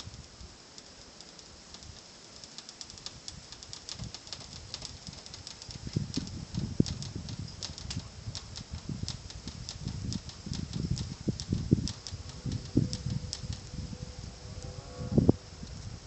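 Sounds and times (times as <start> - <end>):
faint high ticks: 0.0 - 15.9
wind buffeting microphone: 2.8 - 16.0.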